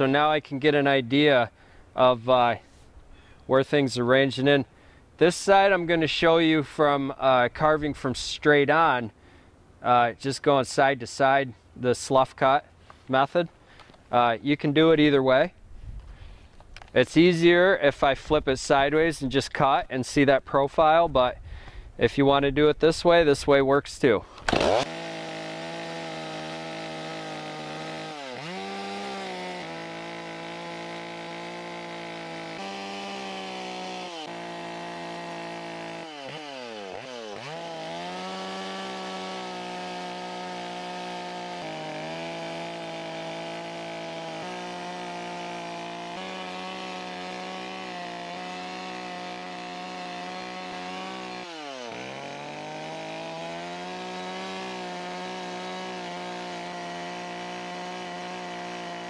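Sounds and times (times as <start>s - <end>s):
chainsaw cutting wood: 24.3s - 59.0s.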